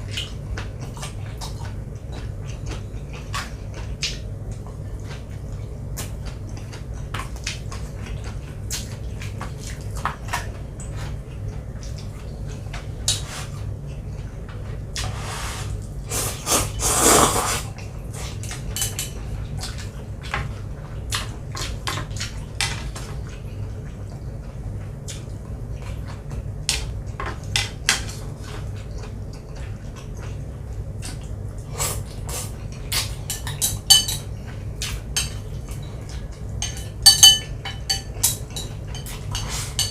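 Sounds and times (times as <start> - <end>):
utensils clinking against bowl: 18.7 - 19.2, 33.0 - 39.9.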